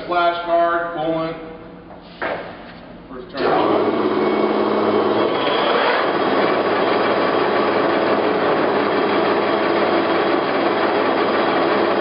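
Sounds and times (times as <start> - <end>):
lathe mechanical hum: 3.3 - 12.0.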